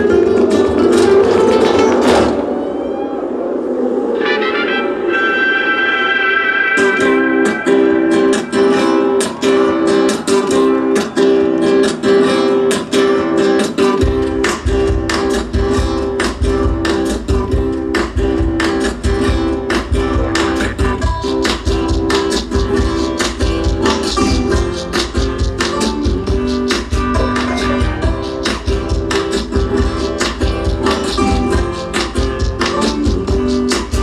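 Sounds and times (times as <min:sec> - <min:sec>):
fast strummed guitars: 0:00.0 - 0:02.4, 0:06.6 - 0:34.0
deep bass: 0:14.0 - 0:34.0.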